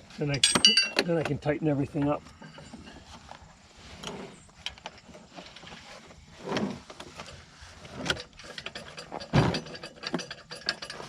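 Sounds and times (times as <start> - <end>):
scraping rustles: 1.1 - 11.0.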